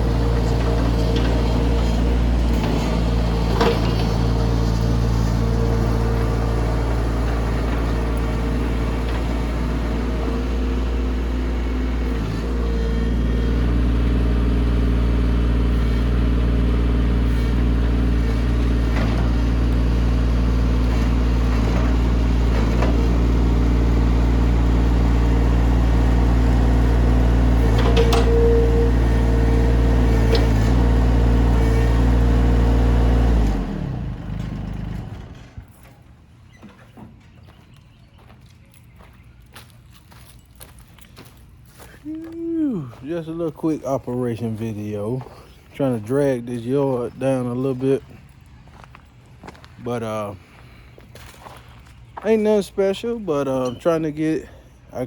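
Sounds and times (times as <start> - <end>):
diesel engine running: 0.0 - 37.3, 38.9 - 55.0
machine clanking: 27.6 - 29.0.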